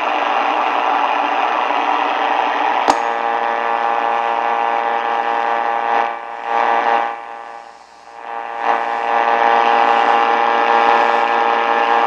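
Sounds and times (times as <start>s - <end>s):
sharp click: 2.9s - 3.2s
steady buzzing tone: 2.9s - 12.0s
radio static hiss: 5.1s - 12.0s.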